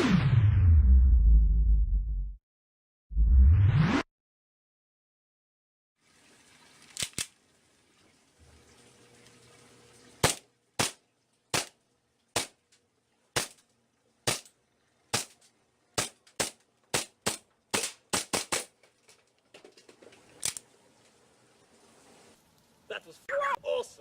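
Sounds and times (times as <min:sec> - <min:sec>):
airsoft gun shots: 0:10.2 - 0:11.8, 0:12.4 - 0:12.6, 0:13.4 - 0:13.6, 0:14.3 - 0:14.5, 0:15.1 - 0:15.4, 0:16.0 - 0:18.7.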